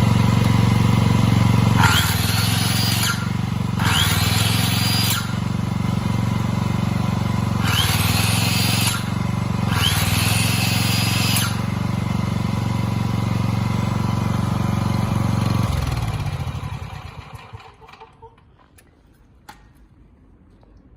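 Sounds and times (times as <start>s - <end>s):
generator engine running: 0.0s - 18.4s
rising high whirring: 1.7s - 6.0s, 7.5s - 11.8s.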